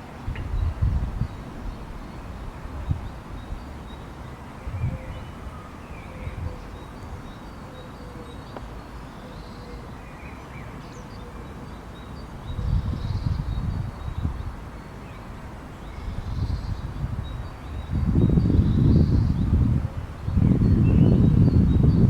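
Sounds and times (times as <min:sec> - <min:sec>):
wind rumble on microphone: 0:00.0 - 0:07.5, 0:12.4 - 0:14.8, 0:15.4 - 0:22.0.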